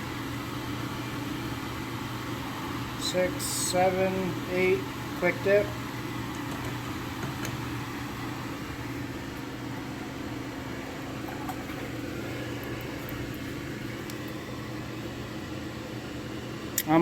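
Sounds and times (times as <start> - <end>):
exhaust fan humming: 0.0 - 17.0.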